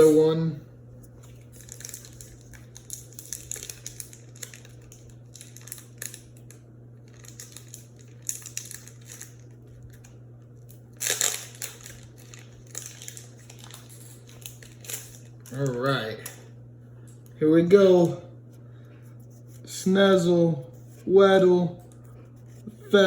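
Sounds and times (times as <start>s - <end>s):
low electrical hum: 0.0s - 23.0s
foil wrapper crinkling and tearing: 1.2s - 16.4s.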